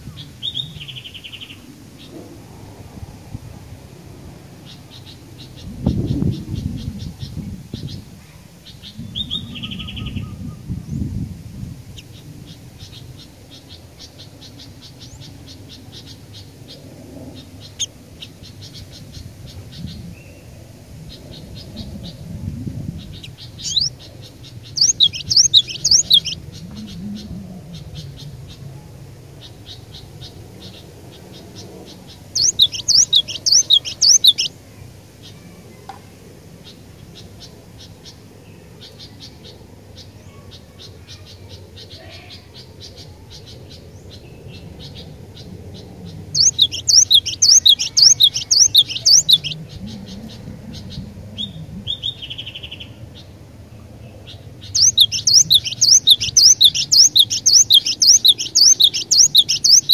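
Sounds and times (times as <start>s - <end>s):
bird singing high notes: 24.8s - 26.3s, 32.4s - 34.5s, 46.4s - 49.6s, 54.8s - 59.9s
faint bird chips: 32.4s - 34.5s, 46.4s - 49.6s.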